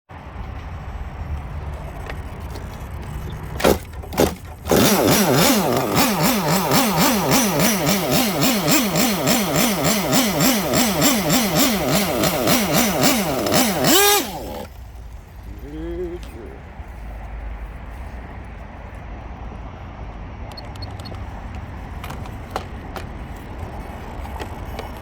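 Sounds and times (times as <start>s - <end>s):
model engine running: 0.2s - 14.8s.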